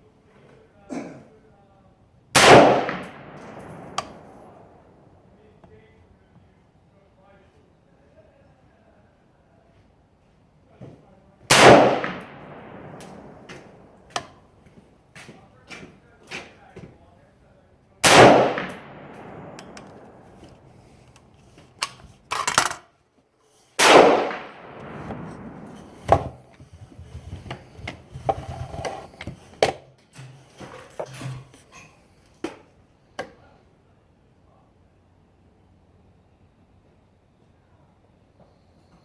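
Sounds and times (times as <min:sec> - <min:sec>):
rifle shot with echo: 0:02.4 - 0:05.2, 0:11.5 - 0:14.5, 0:18.0 - 0:21.0, 0:23.8 - 0:26.4.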